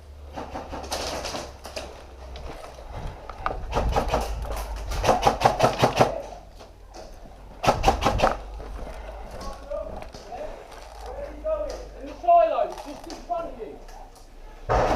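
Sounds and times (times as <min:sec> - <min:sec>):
low rumble: 0:02.0 - 0:05.5, 0:06.8 - 0:12.0.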